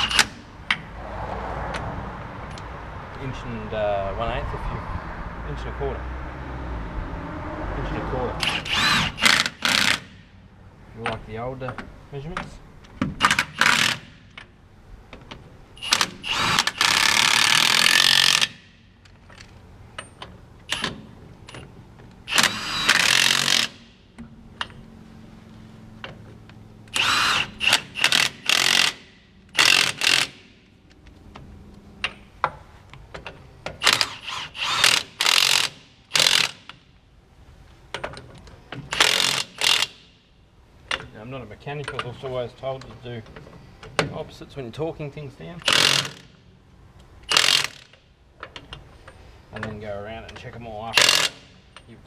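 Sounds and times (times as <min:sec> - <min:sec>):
impact wrench bursts: 0:00.0 - 0:00.8, 0:08.4 - 0:10.3, 0:13.2 - 0:14.4, 0:15.8 - 0:18.8, 0:22.2 - 0:24.0, 0:26.9 - 0:30.6, 0:33.7 - 0:36.8, 0:38.9 - 0:40.2, 0:45.6 - 0:46.4, 0:47.2 - 0:48.0, 0:50.9 - 0:51.8.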